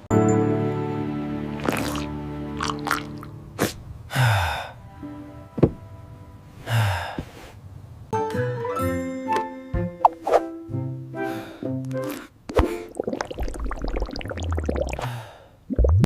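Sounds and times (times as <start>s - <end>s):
background music: 0.0s - 7.0s, 8.2s - 13.2s.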